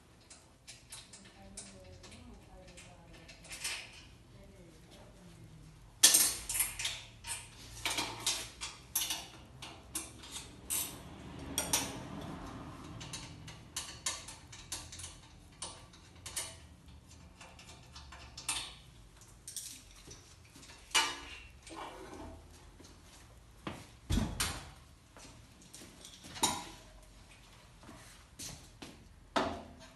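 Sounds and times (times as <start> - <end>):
metal parts clinking and knocking: 0.2 - 4.1, 6.0 - 11.0, 12.8 - 21.5.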